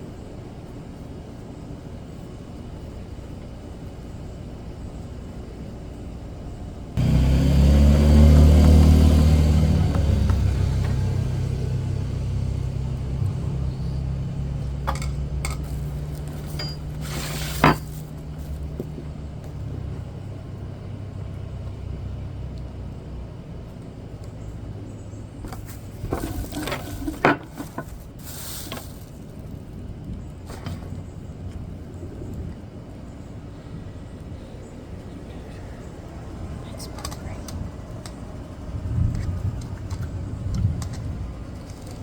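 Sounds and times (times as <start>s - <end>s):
vehicle engine hum: 1.3s - 42.0s
sharp clinks and knocks: 14.8s - 18.0s.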